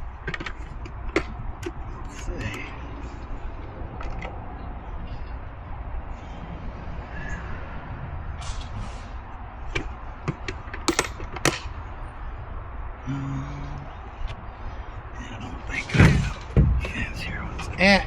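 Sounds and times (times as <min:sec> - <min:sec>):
sharp clicks and knocks: 0:10.9 - 0:11.7.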